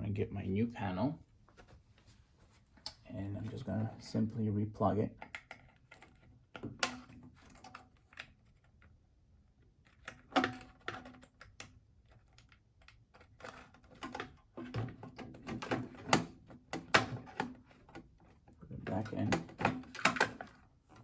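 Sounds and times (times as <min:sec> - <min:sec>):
plastic clicks and knocks: 0:10.0 - 0:21.0.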